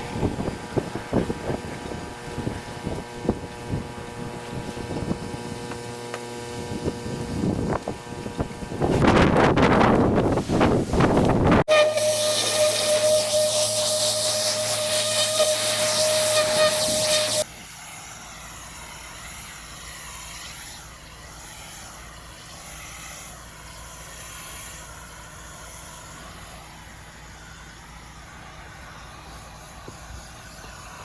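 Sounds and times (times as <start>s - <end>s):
pressure washer spraying: 10.2s - 31.0s.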